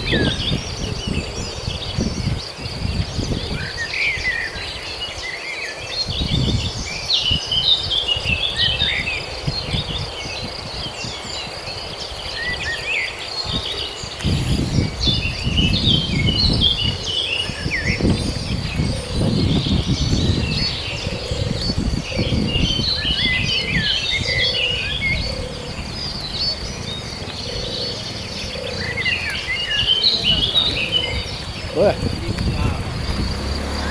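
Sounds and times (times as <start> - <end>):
high insect drone: 0.0 - 33.9
small birds chirping: 0.0 - 33.9
low rumble: 23.8 - 33.9.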